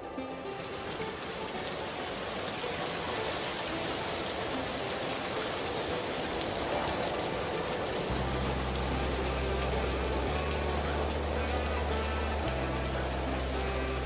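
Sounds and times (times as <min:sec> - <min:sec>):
rain falling on a surface: 0:00.0 - 0:14.0.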